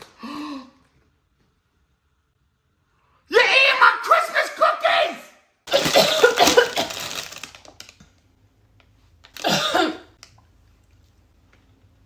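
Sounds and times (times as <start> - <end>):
crackly rustling and clicking: 6.4 - 9.4.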